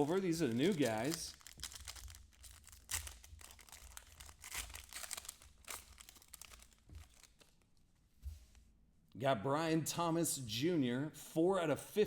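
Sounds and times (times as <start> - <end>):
foil wrapper tearing and crinkling: 0.0 - 7.6.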